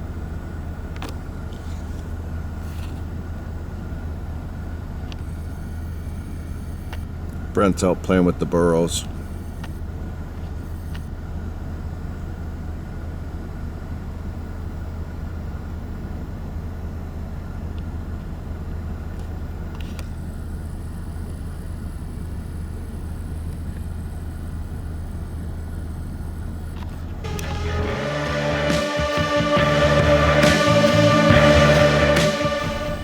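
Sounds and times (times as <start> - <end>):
car engine running: 17.4 - 33.0.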